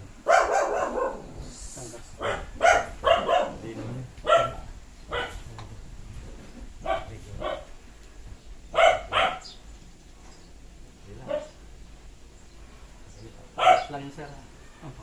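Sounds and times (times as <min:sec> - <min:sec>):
dog barking: 0:00.2 - 0:01.4, 0:02.2 - 0:05.4, 0:06.8 - 0:07.8, 0:08.7 - 0:09.6, 0:11.2 - 0:11.6, 0:13.6 - 0:14.0.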